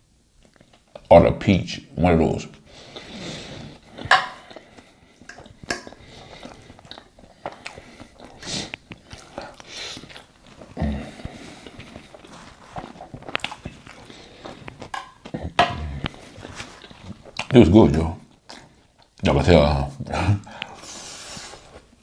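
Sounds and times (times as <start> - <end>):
biting and chewing food: 2.8 - 19.2.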